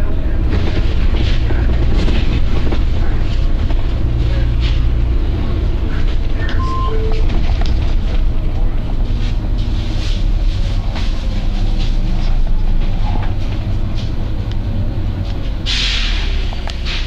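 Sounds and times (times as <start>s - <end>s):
bus engine rumble: 0.0s - 17.0s
air brake hisses: 15.6s - 17.0s.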